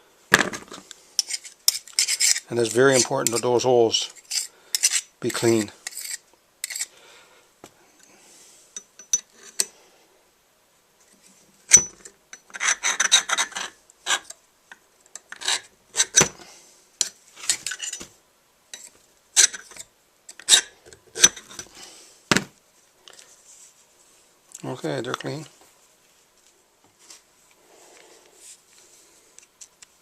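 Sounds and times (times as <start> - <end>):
metal tool scraping chainsaw bar: 1.2 - 6.9, 11.7 - 14.3.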